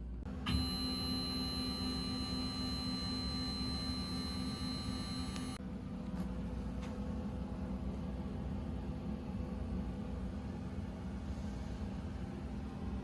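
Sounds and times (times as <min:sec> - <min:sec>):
low electrical hum: 0:00.0 - 0:13.0
high-pitched whines: 0:00.4 - 0:05.6.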